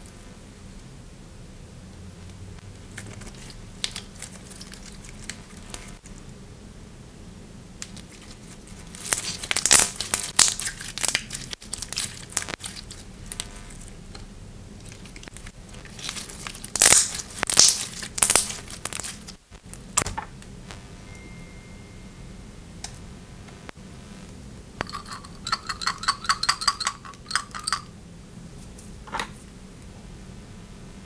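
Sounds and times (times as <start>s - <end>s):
slime crackling and crinkling: 2.8s - 5.7s, 7.8s - 14.0s, 14.7s - 20.1s.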